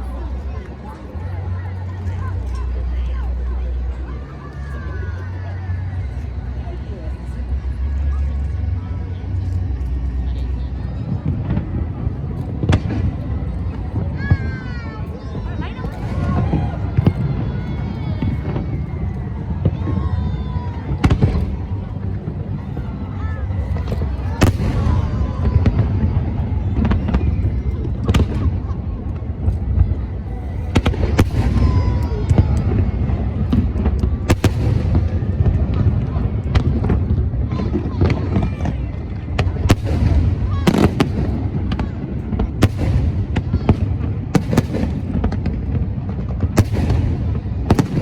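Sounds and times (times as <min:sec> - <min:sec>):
steady low rumble: 0:00.0 - 0:48.0
fireworks bangs: 0:23.5 - 0:48.0.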